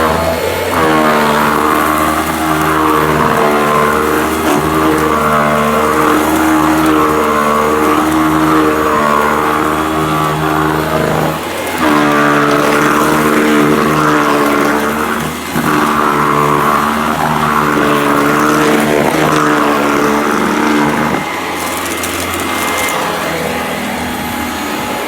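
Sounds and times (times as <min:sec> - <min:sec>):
vacuum cleaner motor whine: 0:00.0 - 0:25.0.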